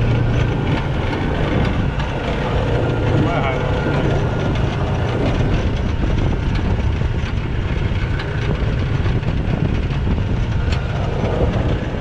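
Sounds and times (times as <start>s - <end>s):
boat engine humming: 0.0s - 12.0s.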